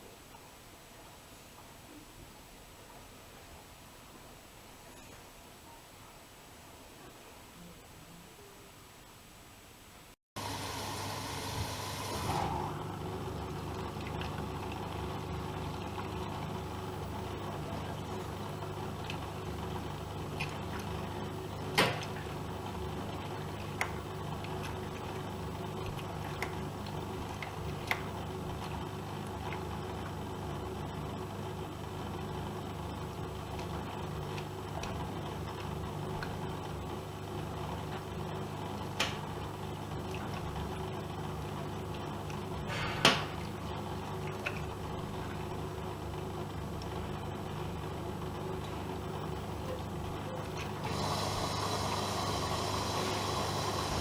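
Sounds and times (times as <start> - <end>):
washing machine motor hum: 10.4 - 54.0.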